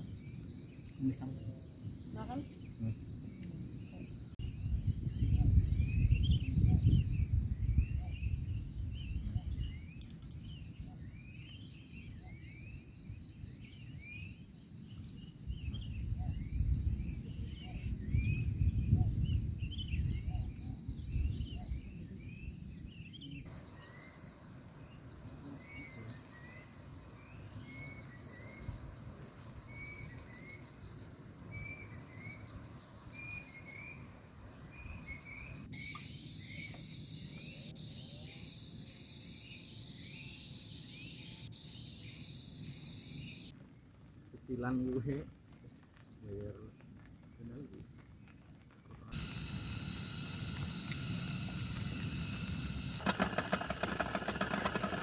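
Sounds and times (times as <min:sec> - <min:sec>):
birds chirping: 0:00.1 - 0:43.9, 0:49.1 - 0:55.0
wind buffeting microphone: 0:04.4 - 0:09.8, 0:15.5 - 0:21.7
insects trilling: 0:07.6 - 0:55.0.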